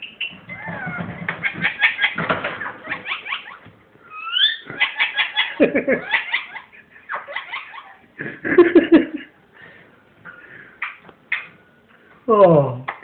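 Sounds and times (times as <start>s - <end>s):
parrot mimicking laughter: 0.0s - 8.9s.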